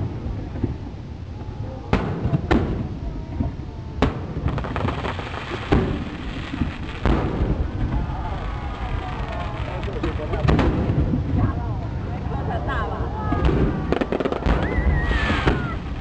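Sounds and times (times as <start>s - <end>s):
firework crackling: 0.0s - 16.0s
low rumble: 0.0s - 16.0s
firework shells bursting: 2.0s - 11.2s.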